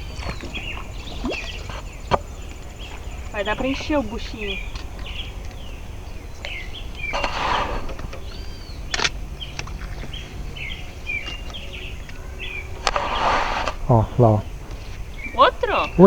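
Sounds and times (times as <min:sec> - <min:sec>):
songbirds singing: 0:00.0 - 0:16.0
steady low rumble: 0:00.0 - 0:16.0.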